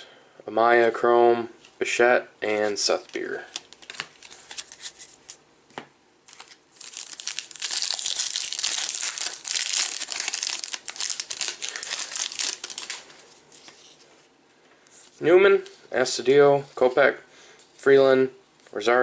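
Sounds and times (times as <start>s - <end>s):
foil wrapper crinkling and tearing: 2.6s - 5.4s, 6.3s - 13.8s.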